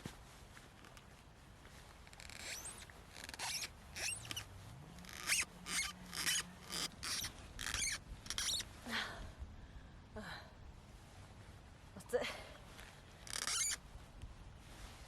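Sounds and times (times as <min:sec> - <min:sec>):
brief squeaks: 0:02.1 - 0:08.6, 0:13.2 - 0:13.8
scraping rubbing strokes: 0:02.1 - 0:08.6, 0:13.2 - 0:13.8.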